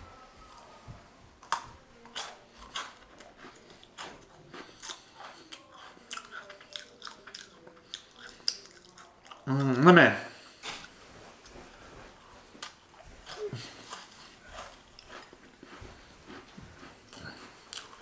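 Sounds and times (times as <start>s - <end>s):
person chewing crunchy cookie: 1.4s - 18.0s.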